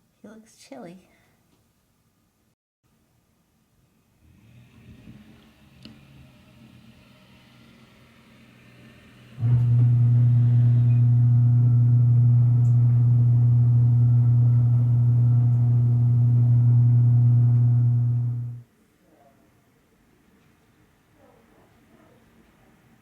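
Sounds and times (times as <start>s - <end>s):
steady low hum: 9.4s - 18.6s.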